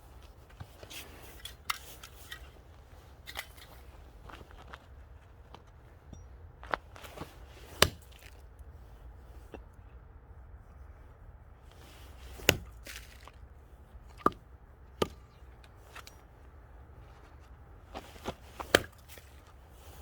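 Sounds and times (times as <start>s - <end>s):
axe chopping wood: 7.7s - 8.4s, 12.3s - 13.4s, 14.1s - 14.4s, 15.0s - 16.1s, 18.2s - 19.5s.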